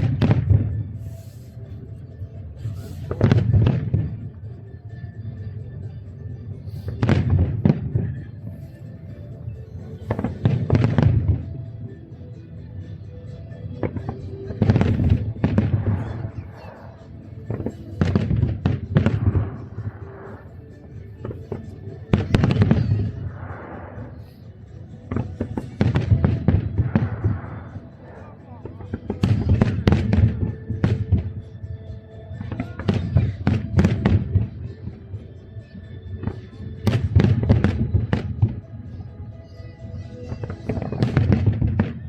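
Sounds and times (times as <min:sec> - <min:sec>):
music playing: 0:00.0 - 0:42.0
fireworks bursting: 0:13.8 - 0:31.5, 0:32.4 - 0:34.8.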